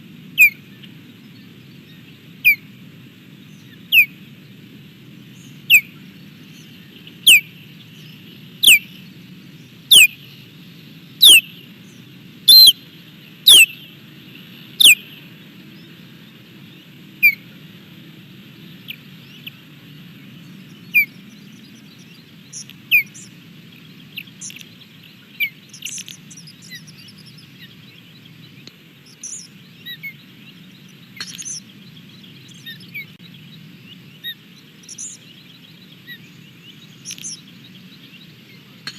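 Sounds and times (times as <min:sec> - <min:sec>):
osprey whistled calls: 0:00.4 - 0:00.9, 0:01.9 - 0:02.7, 0:03.5 - 0:04.2, 0:05.4 - 0:09.1, 0:09.8 - 0:15.9, 0:17.2 - 0:17.4, 0:29.0 - 0:33.2, 0:33.8 - 0:38.9.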